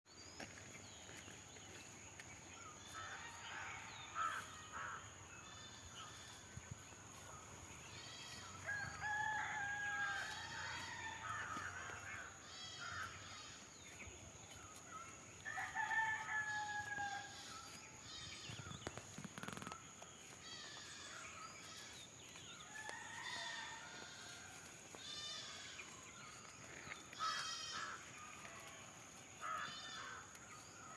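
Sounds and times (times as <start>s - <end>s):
rooster crowing: 8.6s - 12.0s, 15.5s - 17.4s, 22.7s - 24.6s
insect whine: 15.6s - 22.0s.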